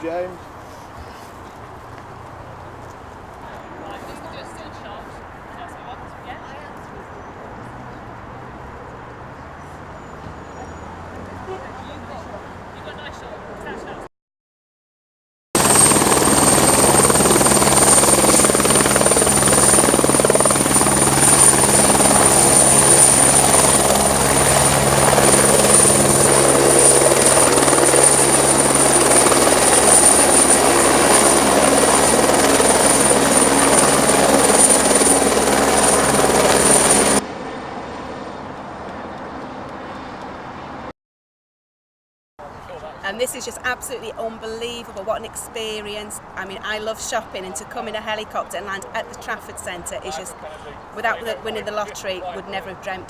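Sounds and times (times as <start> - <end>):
helicopter rotor beat: 15.6 - 40.9, 43.1 - 53.0
helicopter turbine whine: 15.6 - 40.9, 43.1 - 53.0.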